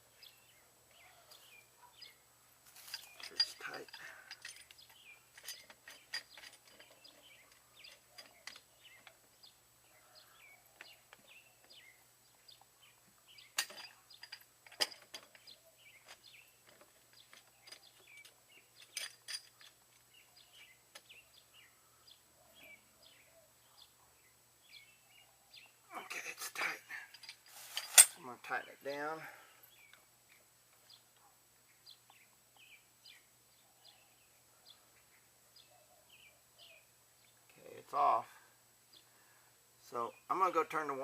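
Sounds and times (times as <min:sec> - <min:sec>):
faint birds chirping: 0:00.0 - 0:41.0.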